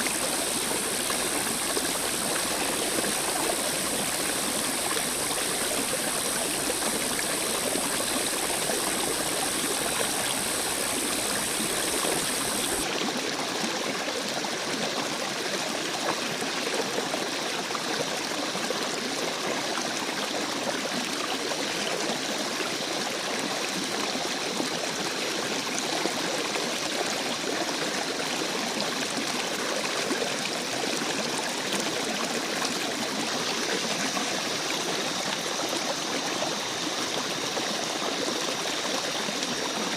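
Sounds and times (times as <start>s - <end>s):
steady high hiss: 0.0s - 12.9s
running water rushing: 0.0s - 13.8s, 24.7s - 39.9s.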